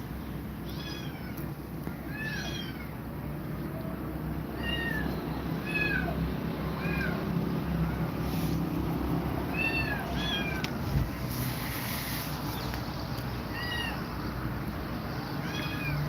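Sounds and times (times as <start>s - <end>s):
kittens meowing: 0.6s - 3.0s, 4.5s - 8.0s, 9.4s - 11.2s, 13.4s - 14.2s, 15.4s - 16.0s.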